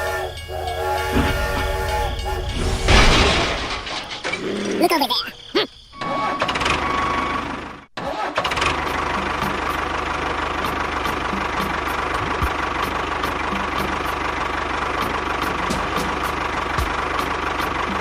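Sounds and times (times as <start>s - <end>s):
small engine chugging: 0.0s - 18.0s.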